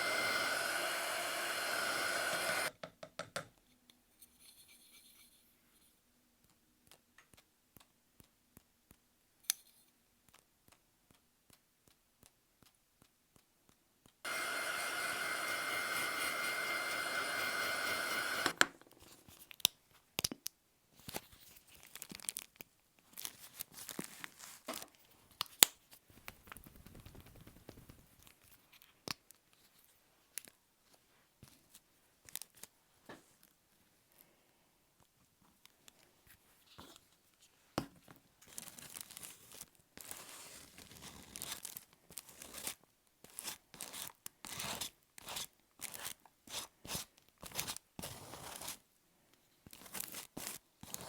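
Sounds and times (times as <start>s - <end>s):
steady hiss: 0.0s - 2.7s, 14.3s - 18.6s.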